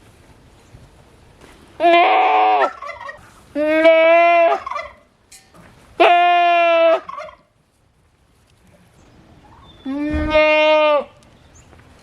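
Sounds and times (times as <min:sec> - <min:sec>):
goat screaming: 0:01.8 - 0:02.8, 0:06.0 - 0:07.1, 0:09.8 - 0:11.2.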